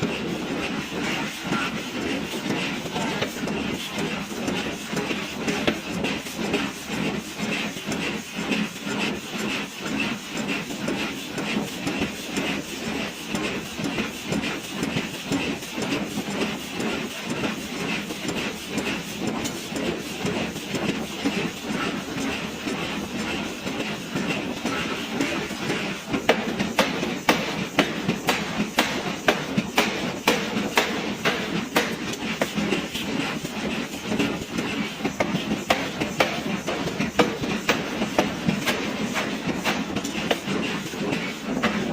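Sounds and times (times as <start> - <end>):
forging hammer blows: 16.5 - 41.9.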